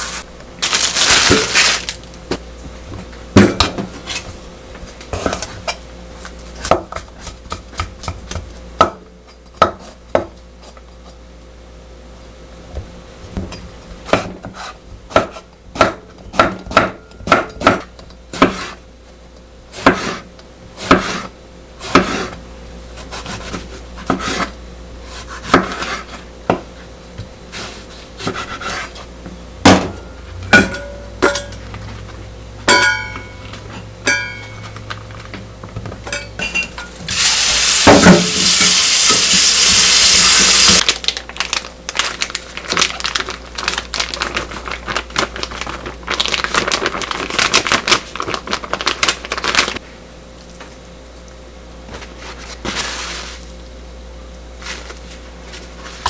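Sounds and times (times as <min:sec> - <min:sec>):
ringing clinks of dishes: 0:32.7 - 0:33.4.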